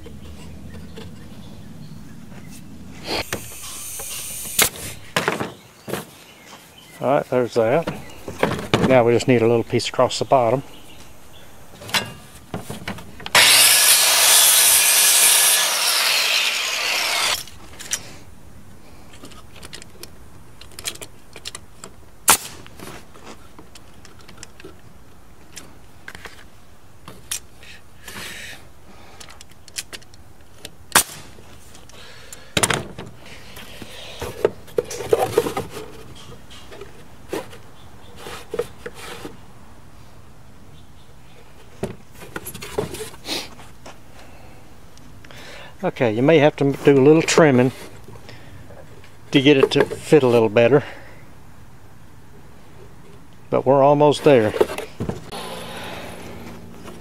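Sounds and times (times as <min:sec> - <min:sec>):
table saw cutting wood: 0:03.0 - 0:04.8, 0:13.3 - 0:17.6, 0:55.3 - 0:56.7.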